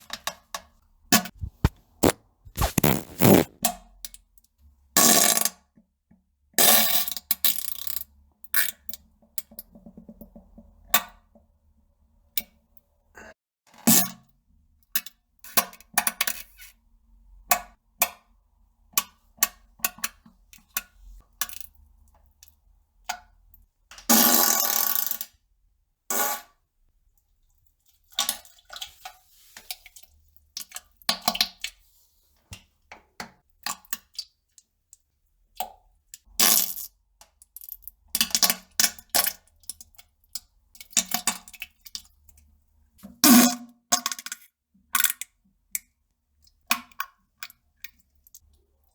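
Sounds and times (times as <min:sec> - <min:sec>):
plops and crackles: 0:01.3 - 0:03.7.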